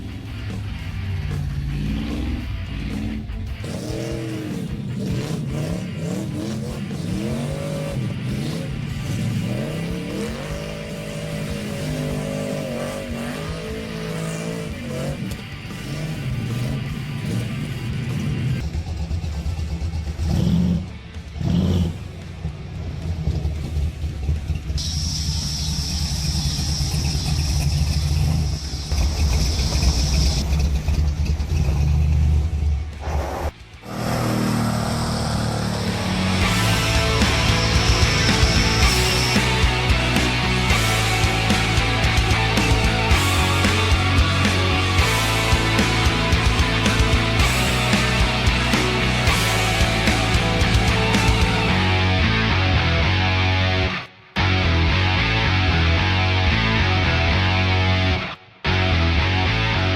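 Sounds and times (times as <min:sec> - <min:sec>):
car engine revving: 0:00.0 - 0:59.9.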